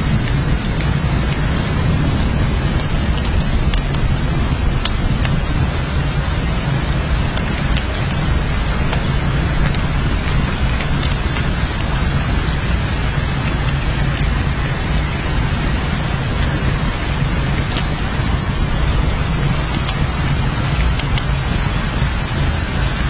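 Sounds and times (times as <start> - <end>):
heavy rain hiss: 0.0 - 23.0
rain drop ticks: 0.0 - 23.0.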